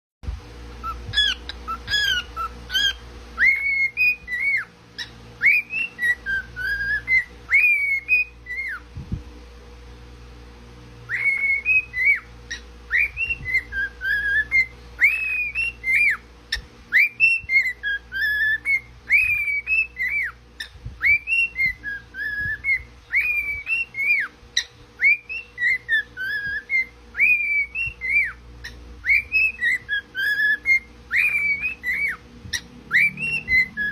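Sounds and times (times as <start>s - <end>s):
cockatiel whistling a tune: 0.8s - 8.8s, 11.1s - 33.9s.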